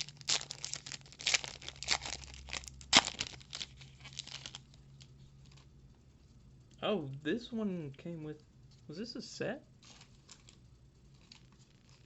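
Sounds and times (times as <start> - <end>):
foil wrapper tearing and crinkling: 0.0 - 4.8, 11.2 - 12.0.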